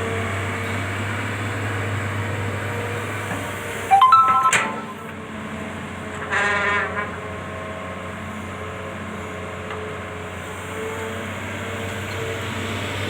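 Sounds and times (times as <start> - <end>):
brief pitched sound: 3.9 - 5.2.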